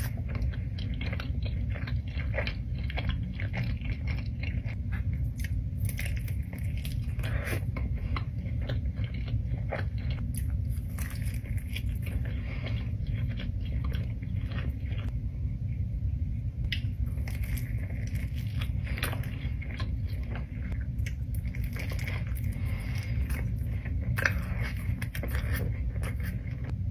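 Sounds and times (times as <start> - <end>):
crunchy food chewing: 0.0 - 15.2, 16.6 - 26.8
low hum: 0.0 - 26.9.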